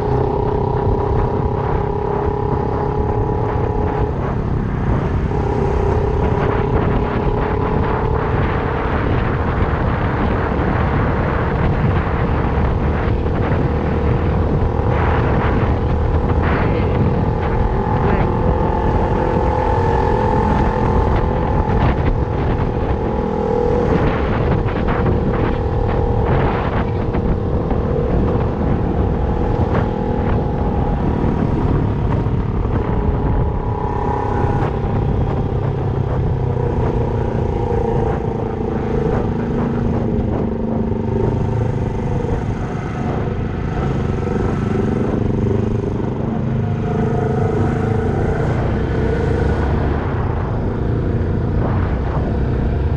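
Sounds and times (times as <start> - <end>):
motorcycle engine running: 0.0 - 52.9.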